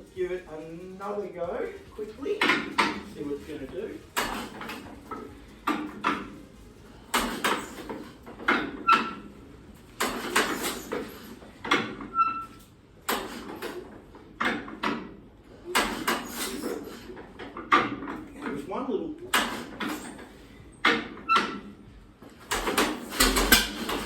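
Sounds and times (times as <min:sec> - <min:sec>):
engine clanking when hand-cranked: 0:04.2 - 0:06.4, 0:07.1 - 0:09.3, 0:10.0 - 0:12.4, 0:13.0 - 0:18.6, 0:19.3 - 0:24.0
brief squeak: 0:12.1 - 0:12.6.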